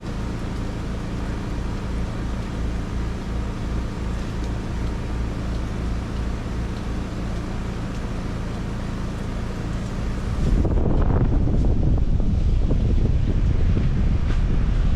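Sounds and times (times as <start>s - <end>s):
heat pump humming: 0.0s - 14.9s
low rushing noise: 10.1s - 14.9s.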